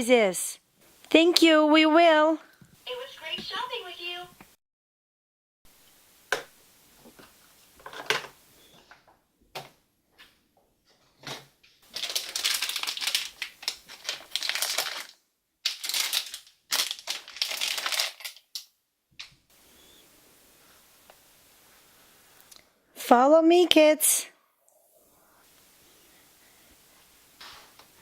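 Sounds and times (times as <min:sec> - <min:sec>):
plastic packaging crinkling: 0:11.8 - 0:18.7.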